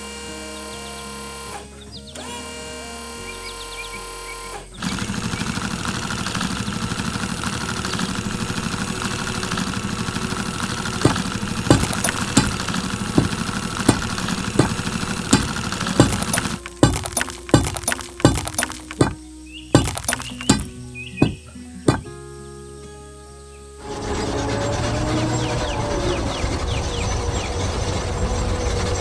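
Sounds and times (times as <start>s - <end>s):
heavy machine engine running: 0.0s - 19.2s, 23.8s - 29.0s
sharp knocks: 11.0s - 19.2s, 19.8s - 22.1s.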